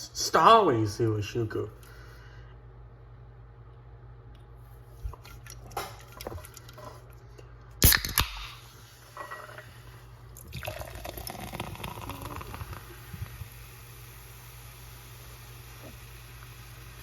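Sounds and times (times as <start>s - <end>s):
soda can opening snap and hiss: 7.8s - 9.6s, 11.4s - 17.0s
soda fizzing as poured: 7.8s - 17.0s.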